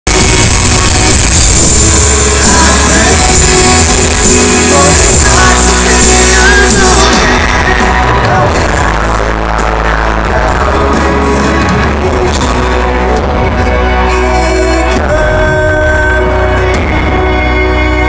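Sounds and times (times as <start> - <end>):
heavy steady bass: 0.0 - 18.0
loud amplified band music: 0.0 - 18.0.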